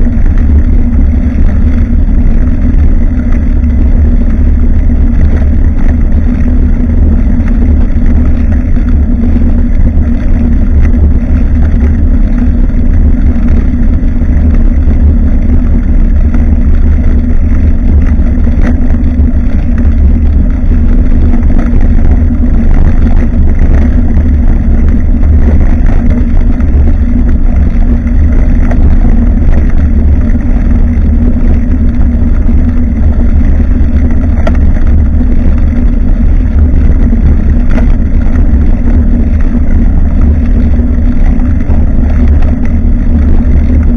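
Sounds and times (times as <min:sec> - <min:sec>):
constant low hum: 0:00.0 - 0:43.9
road vibration: 0:00.0 - 0:43.9
wind rumble on microphone: 0:00.0 - 0:43.9.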